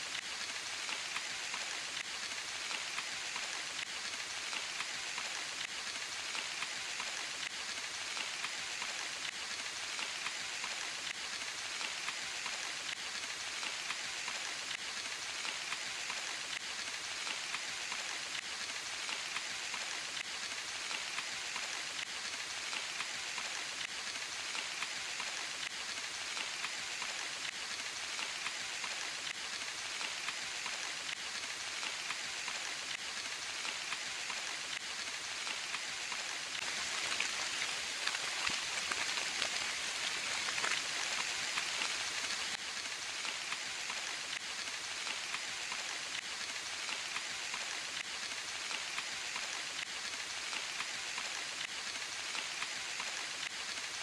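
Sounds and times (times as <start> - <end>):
steady rain hiss: 0.0 - 54.0
drops pattering on leaves: 28.1 - 51.6.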